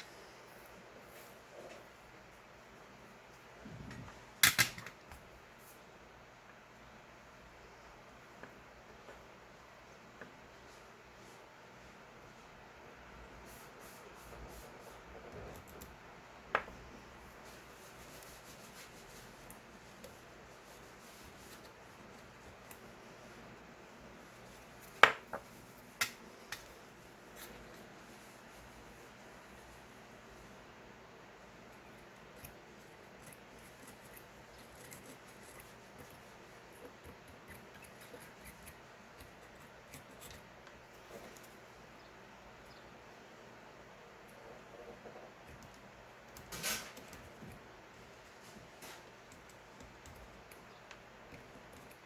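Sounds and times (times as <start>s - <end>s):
steady low hiss: 0.0s - 52.0s
small clicks and scratches: 13.9s - 16.0s, 17.4s - 30.6s, 31.4s - 42.9s, 44.1s - 52.0s
handling noise rubbing and ticks: 17.4s - 41.8s, 44.1s - 52.0s.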